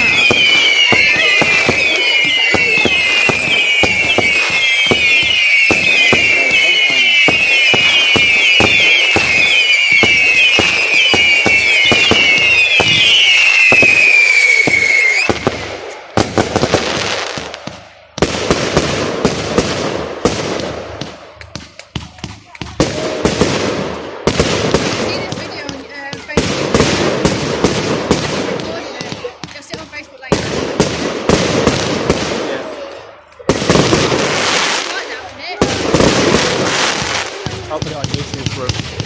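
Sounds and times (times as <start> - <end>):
firework bangs: 0.0 - 39.0
firework crackling: 0.0 - 39.0
whistling firework shots: 0.0 - 39.0.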